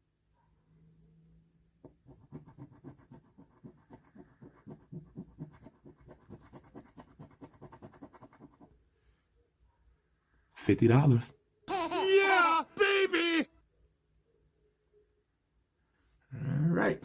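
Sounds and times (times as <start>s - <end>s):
coin scratching lottery ticket: 2.1s - 8.7s.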